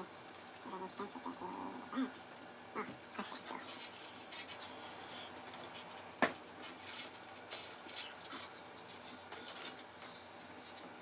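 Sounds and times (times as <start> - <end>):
cables rustling: 3.5 - 11.0.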